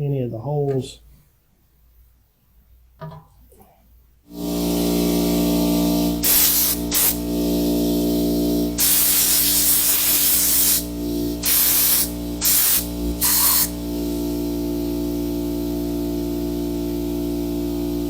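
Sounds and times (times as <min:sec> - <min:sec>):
compressed air gun hissing: 0:06.1 - 0:07.3, 0:08.7 - 0:13.8.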